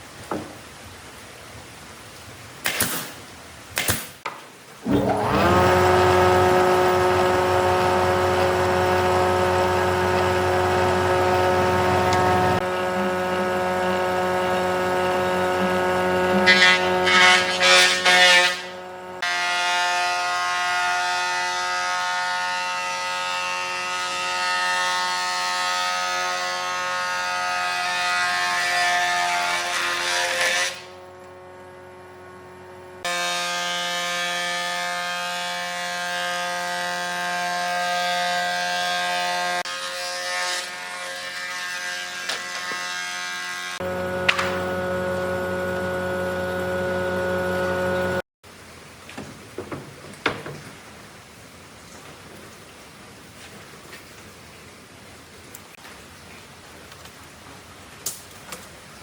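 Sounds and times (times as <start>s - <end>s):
power tool motor whining: 4.9s - 19.4s, 42.2s - 48.2s.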